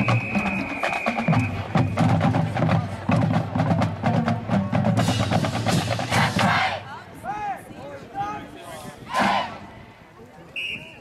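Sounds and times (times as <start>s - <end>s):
drum line percussion: 0.0s - 6.9s
marching band playing: 0.0s - 7.2s, 9.1s - 9.7s.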